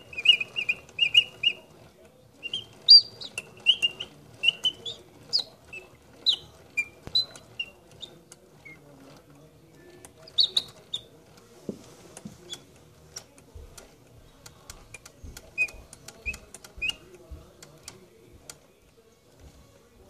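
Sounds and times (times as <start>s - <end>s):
mechanical bird chirping: 0.0s - 1.7s, 2.4s - 8.8s, 10.2s - 11.1s, 15.5s - 17.1s
sharp mechanical clicks: 12.5s - 18.7s.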